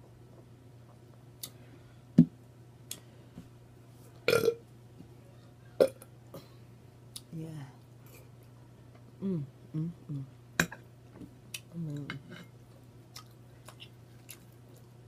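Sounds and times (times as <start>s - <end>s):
woman burping: 4.3s - 4.6s.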